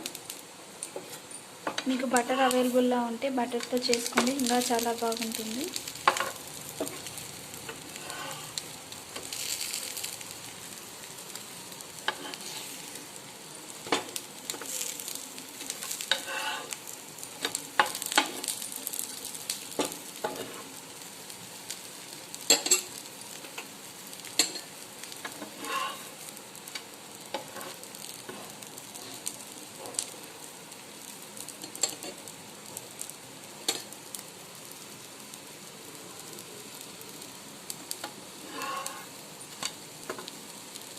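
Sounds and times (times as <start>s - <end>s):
food sizzling in a pan: 0.0s - 40.9s
utensil scraping a pan: 7.8s - 8.6s, 12.1s - 12.9s, 16.0s - 16.8s, 25.3s - 26.2s, 27.4s - 28.5s, 38.4s - 39.1s.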